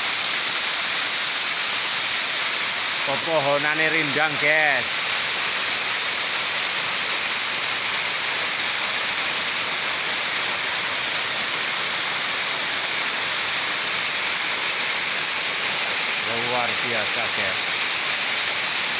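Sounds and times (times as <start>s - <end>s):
waterfall rushing: 3.0s - 5.4s, 15.4s - 18.9s.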